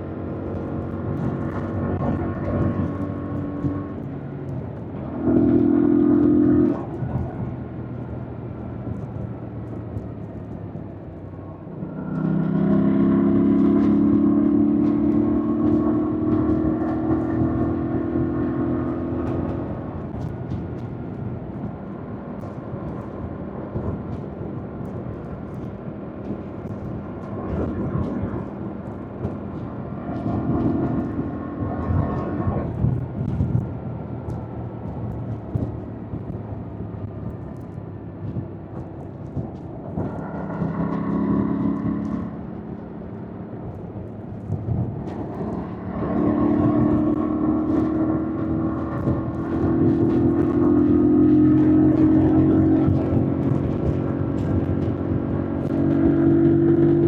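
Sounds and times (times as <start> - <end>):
motorcycle engine revving: 11.8 - 20.6, 26.2 - 57.0.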